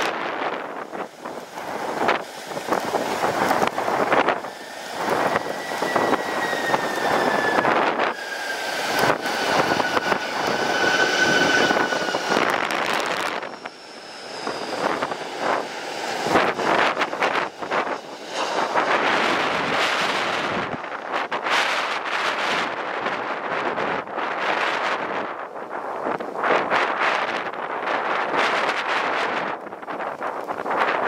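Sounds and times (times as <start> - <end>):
jet airliner engine whine: 0.0 - 23.1
wind buffeting microphone: 0.0 - 31.0.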